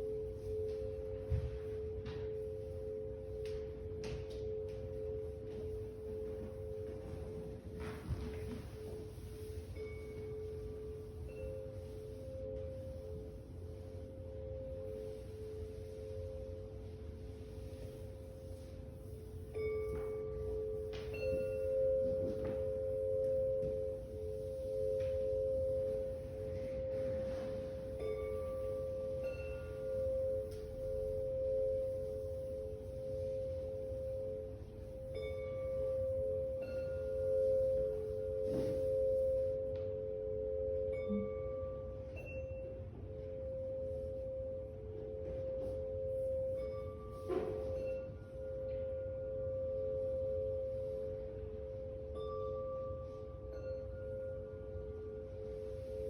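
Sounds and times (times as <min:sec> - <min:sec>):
chime bars ringing: 0:27.8 - 0:56.0.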